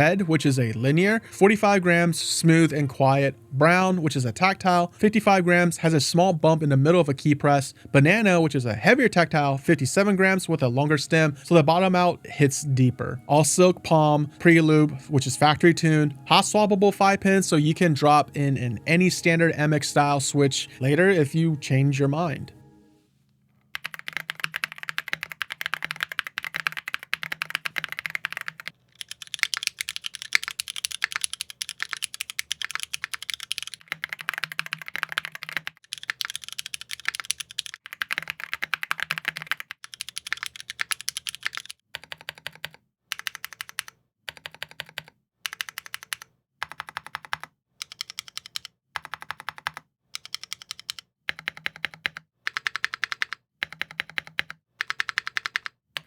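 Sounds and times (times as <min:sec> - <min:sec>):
mechanical keyboard typing: 0:23.7 - 0:56.0.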